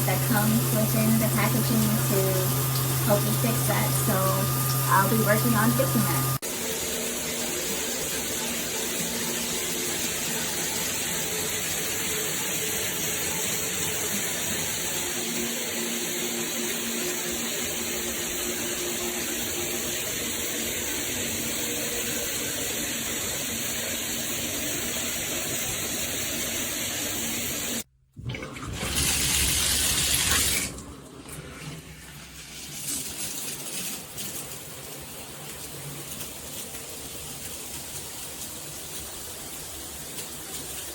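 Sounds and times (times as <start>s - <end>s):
uneven water sound: 0.0s - 6.4s, 28.2s - 35.0s
shower head spraying water: 0.0s - 27.9s.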